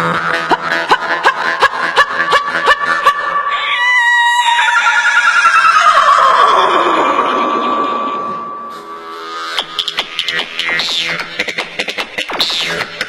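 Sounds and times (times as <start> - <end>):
vocal gliding tone: 6.0 - 9.6.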